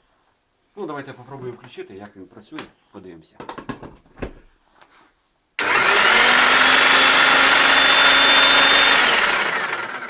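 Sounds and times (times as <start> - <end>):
demolition hammer motor whining: 5.6 - 10.0.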